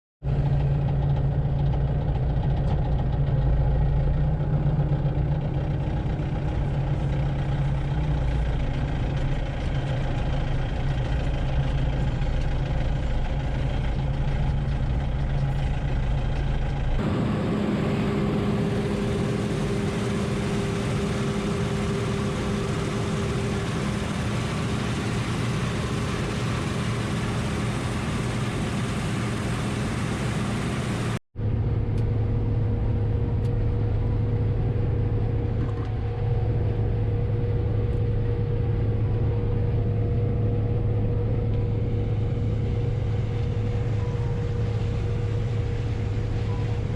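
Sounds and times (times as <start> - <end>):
tractor engines running: 0.3 - 31.2
higher-pitched engine with hiss: 17.0 - 31.2.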